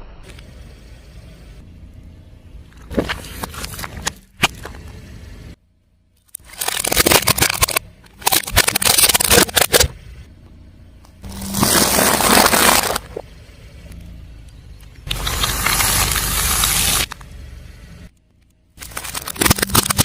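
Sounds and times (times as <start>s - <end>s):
tyre crushing brittle objects: 6.2s - 9.9s, 11.2s - 13.2s, 15.0s - 17.2s, 18.8s - 20.0s.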